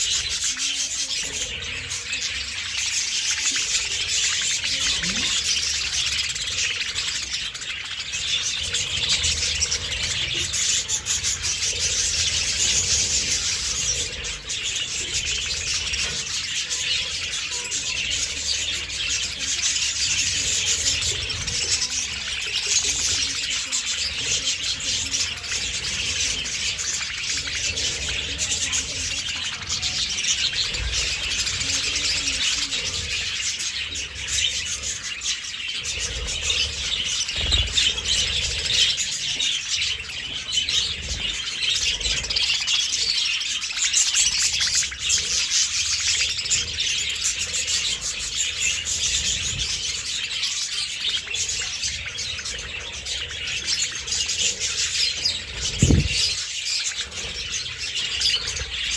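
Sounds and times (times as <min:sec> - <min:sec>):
budgerigars chattering and chirping: 0:00.0 - 0:58.9.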